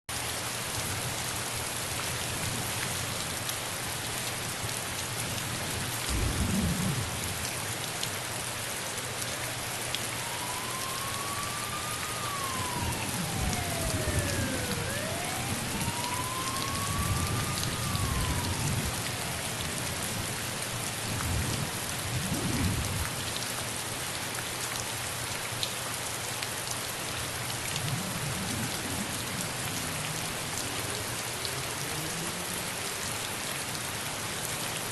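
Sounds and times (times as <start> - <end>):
steady rain: 0.1 - 34.9
thunder rumbling: 6.1 - 7.6, 9.5 - 20.4, 27.7 - 31.3
faint wailing tone: 9.7 - 19.5.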